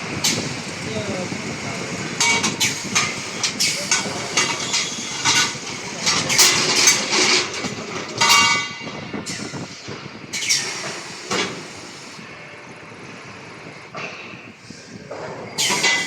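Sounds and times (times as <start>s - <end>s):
metal clanking and rattling: 2.2s - 9.5s.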